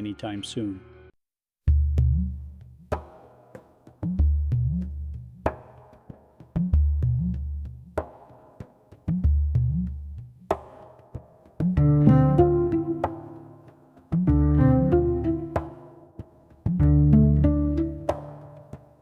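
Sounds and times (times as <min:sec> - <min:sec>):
keyboard chord: 0:11.8 - 0:13.6, 0:14.3 - 0:16.0
electronic music: 0:11.8 - 0:13.7, 0:14.3 - 0:16.1, 0:16.8 - 0:18.6.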